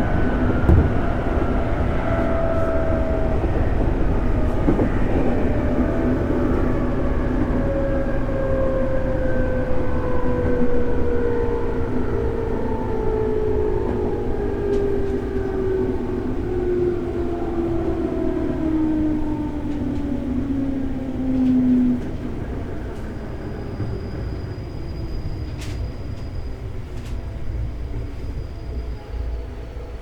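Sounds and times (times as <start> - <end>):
train motor whine: 0.0 - 8.8
train wheels rumbling on rail: 0.0 - 30.0.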